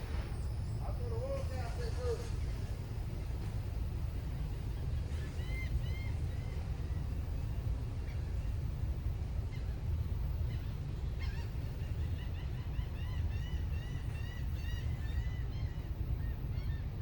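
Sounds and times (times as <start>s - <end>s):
steady low rumble: 0.0s - 12.4s
birds calling: 4.1s - 17.0s.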